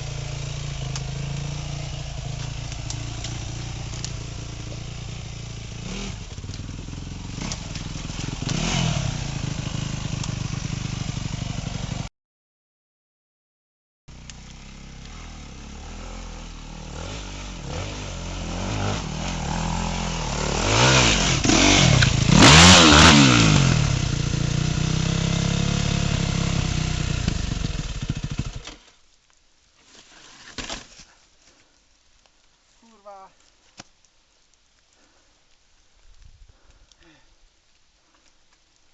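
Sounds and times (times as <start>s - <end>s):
motorcycle engine revving hard: 0.0s - 12.1s, 14.6s - 28.6s.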